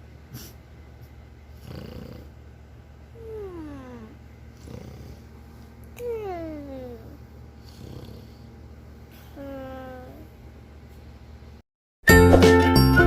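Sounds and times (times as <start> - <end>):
child snoring: 1.5 - 2.4, 3.2 - 5.3, 6.0 - 8.5, 9.2 - 10.3
man snoring: 1.6 - 2.4, 3.2 - 5.3, 7.6 - 8.5.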